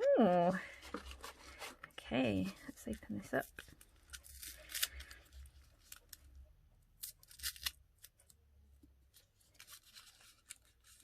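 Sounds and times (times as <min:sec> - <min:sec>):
package wrapping crinkling: 0:03.4 - 0:08.4, 0:09.2 - 0:11.0.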